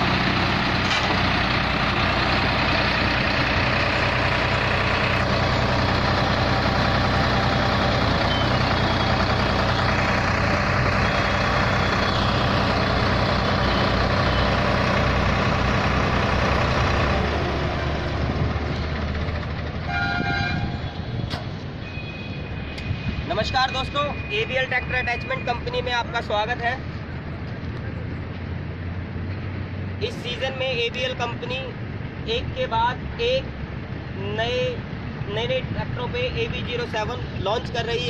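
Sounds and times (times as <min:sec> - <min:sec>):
diesel engine running hard: 0:00.0 - 0:21.8
short beep: 0:21.8 - 0:23.1.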